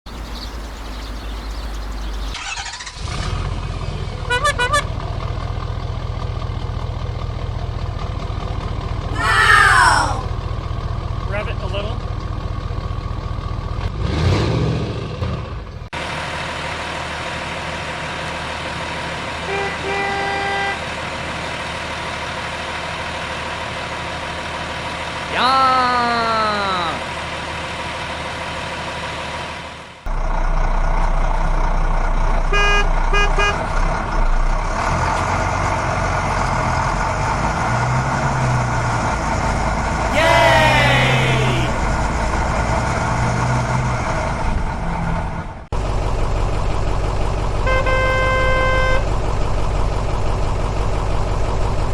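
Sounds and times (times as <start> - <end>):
vehicle engine running: 0.1 - 14.1, 27.0 - 51.9
short horn toots: 19.5 - 20.8, 32.5 - 33.7, 47.7 - 49.1.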